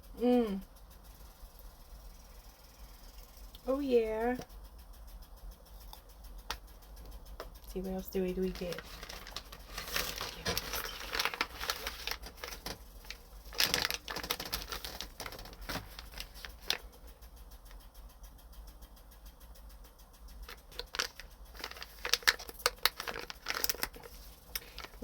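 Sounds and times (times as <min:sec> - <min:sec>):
packaging crinkling and clicking: 0:08.5 - 0:16.8, 0:20.5 - 0:25.0.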